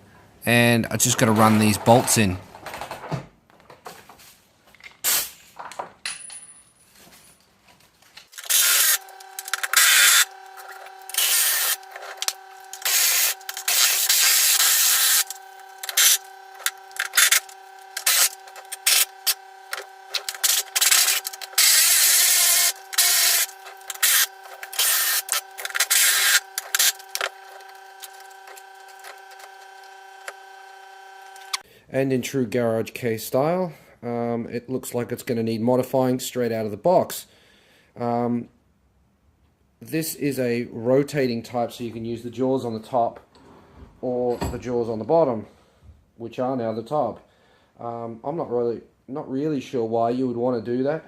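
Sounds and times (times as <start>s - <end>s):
power tool humming: 8.4s - 31.6s.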